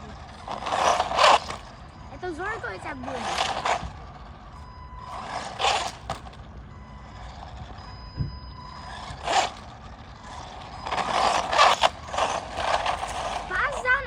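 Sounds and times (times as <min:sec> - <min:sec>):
rc car motor whirring: 0:00.0 - 0:14.0.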